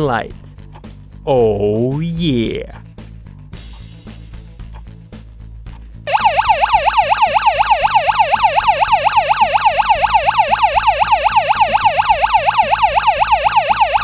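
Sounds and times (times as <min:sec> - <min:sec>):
electronic siren warbling: 0:06.1 - 0:14.0.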